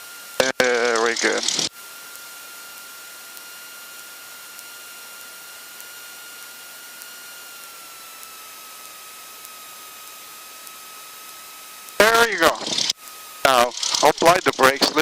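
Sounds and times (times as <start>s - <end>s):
high-pitched whine: 0.0s - 15.0s
intercom hiss: 12.0s - 12.8s, 13.4s - 15.0s.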